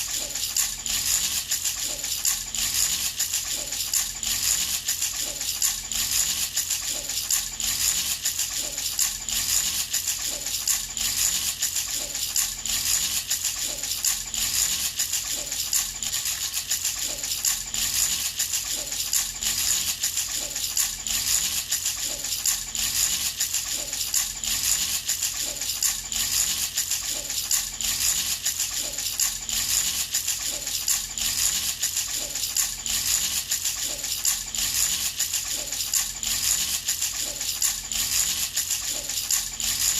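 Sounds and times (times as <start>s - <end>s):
baby rattle jingling: 0.0s - 39.9s.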